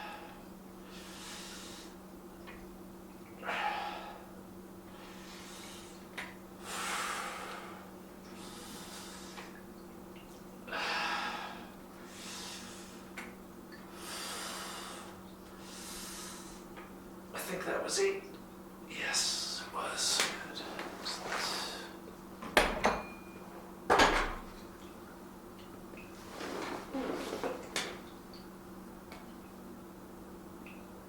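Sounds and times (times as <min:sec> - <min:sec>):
man breathing hard: 0:00.0 - 0:02.0, 0:03.4 - 0:04.3, 0:06.6 - 0:09.5, 0:10.7 - 0:13.1, 0:14.0 - 0:16.7.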